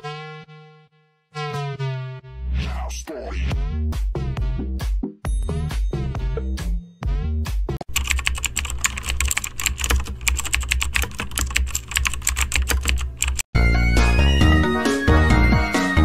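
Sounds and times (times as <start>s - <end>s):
music: 0.0s - 7.8s, 13.6s - 16.0s
keyboard typing clicks: 7.8s - 13.5s.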